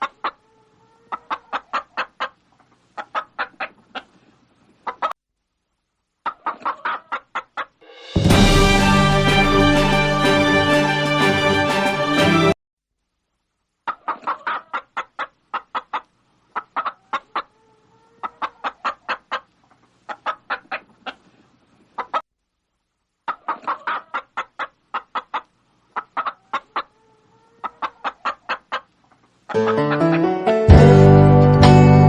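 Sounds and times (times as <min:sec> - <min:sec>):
hen clucking: 0:00.0 - 0:05.2, 0:06.2 - 0:07.8, 0:13.8 - 0:22.2, 0:23.2 - 0:30.8.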